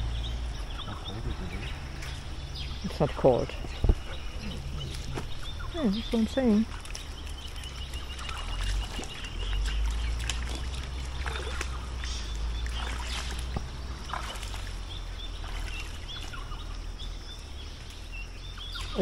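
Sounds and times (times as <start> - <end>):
low rumble on microphone: 0.0 - 19.0
water splashing from wading: 0.0 - 19.0.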